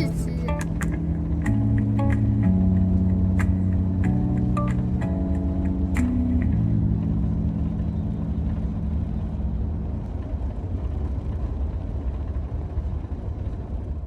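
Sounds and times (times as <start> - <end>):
background music: 0.0 - 9.9
car driving rumble: 0.0 - 14.0.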